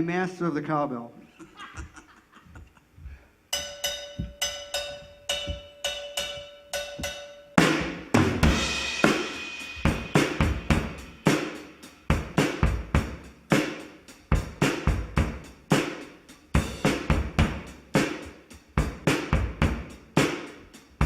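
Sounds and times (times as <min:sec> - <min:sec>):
cowbell ringing in steady beat: 0:03.5 - 0:11.3
drum kit with crashing cymbals: 0:03.5 - 0:21.0.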